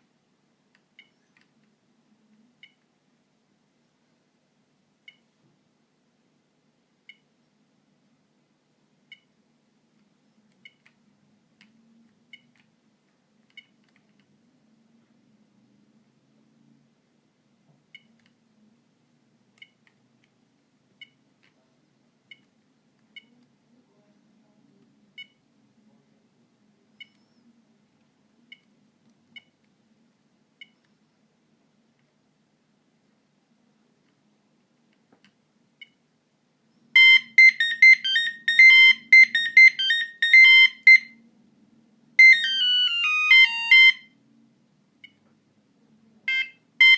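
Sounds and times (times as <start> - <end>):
faint low hum: 0.0 - 46.9
phone keypad beeps: 37.0 - 41.2, 42.2 - 44.1, 46.3 - 46.9.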